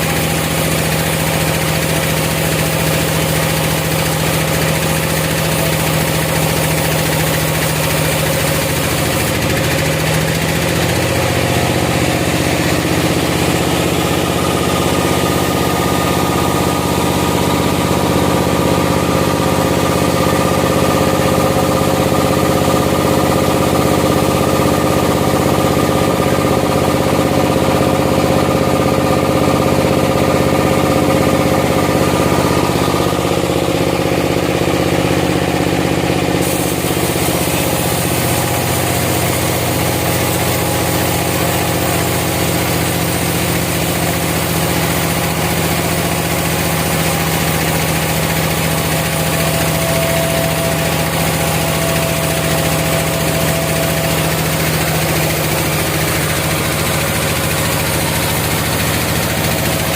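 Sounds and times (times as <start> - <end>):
sawmill engine running: 0.0 - 59.9
hiss: 36.4 - 58.0.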